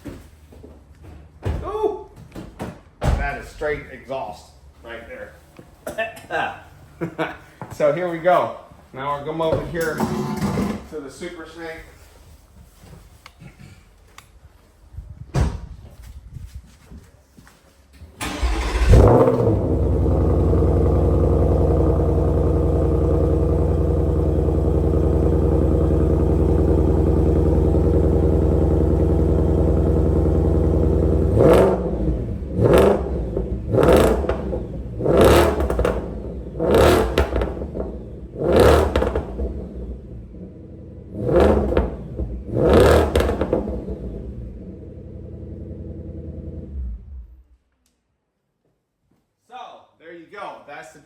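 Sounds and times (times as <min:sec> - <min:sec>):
engine revving: 0:18.2 - 0:47.4
car engine starting: 0:18.2 - 0:47.5.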